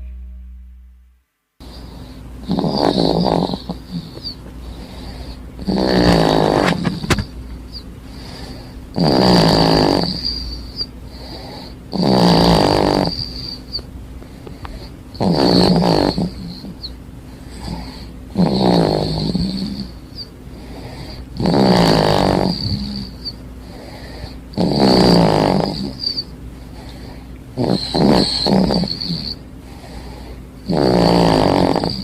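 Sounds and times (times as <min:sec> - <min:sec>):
low hum: 0:00.0 - 0:09.0
baby snoring: 0:01.6 - 0:07.4, 0:08.1 - 0:13.8, 0:14.5 - 0:32.0.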